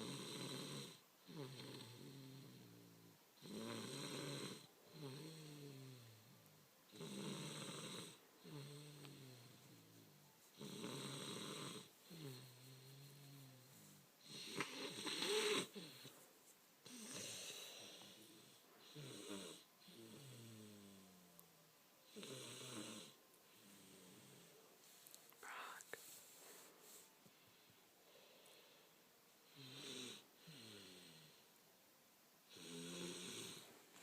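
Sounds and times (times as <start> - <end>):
person snoring: 0.0 - 16.1, 16.8 - 21.3, 32.5 - 33.7.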